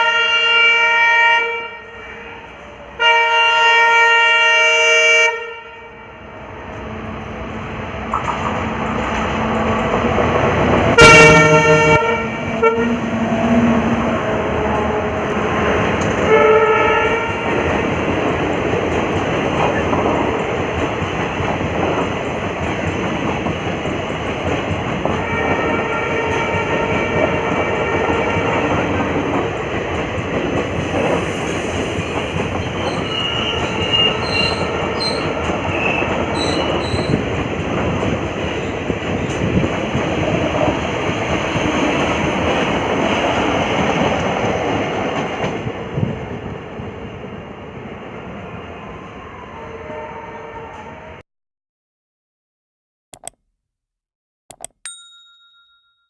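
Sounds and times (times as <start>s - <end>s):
locomotive horn: 0.0s - 6.2s, 10.9s - 13.8s, 16.1s - 17.6s, 25.1s - 28.7s, 49.6s - 51.2s
train wheel and rail noise: 0.0s - 51.2s
high squeals: 31.1s - 35.2s.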